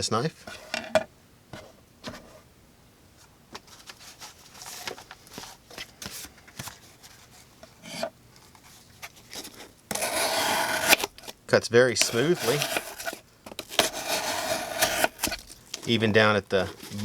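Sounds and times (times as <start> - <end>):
knife slicing through cord: 12.0 - 13.1.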